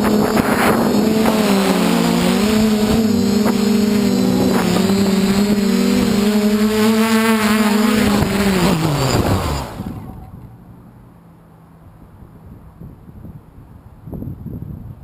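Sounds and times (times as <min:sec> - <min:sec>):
quadcopter motors humming: 0:00.0 - 0:10.8.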